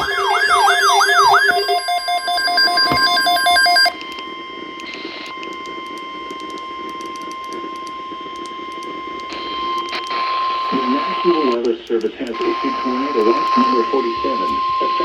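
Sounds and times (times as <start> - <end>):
steady alert tone: 0.0 - 3.9
pulsing electronic beeps: 0.0 - 4.0
static clicks: 0.0 - 14.9
radio hiss: 4.6 - 15.0.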